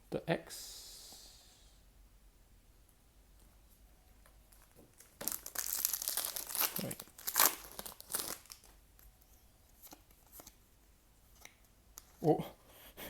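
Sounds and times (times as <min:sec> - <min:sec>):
wrapper tearing and crinkling: 0:04.5 - 0:08.8.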